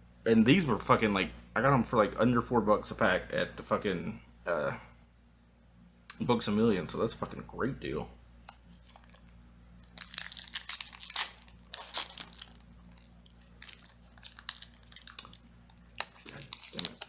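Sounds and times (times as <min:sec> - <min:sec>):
foil wrapper tearing and crinkling: 0:08.6 - 0:17.0.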